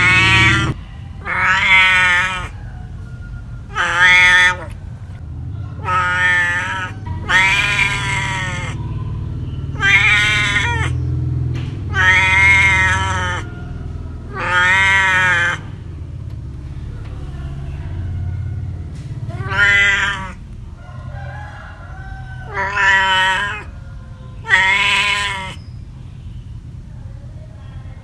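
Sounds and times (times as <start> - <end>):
cat meowing: 0.0 - 2.6, 3.7 - 4.8, 5.8 - 8.8, 9.8 - 11.0, 11.9 - 13.6, 14.3 - 15.8, 19.2 - 20.4, 22.3 - 23.8, 24.4 - 25.6
steady low rumble: 0.0 - 22.5.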